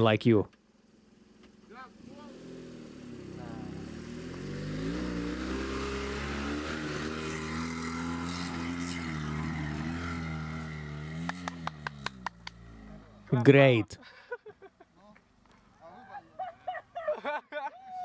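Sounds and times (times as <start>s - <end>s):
small car engine revving: 1.2s - 13.3s.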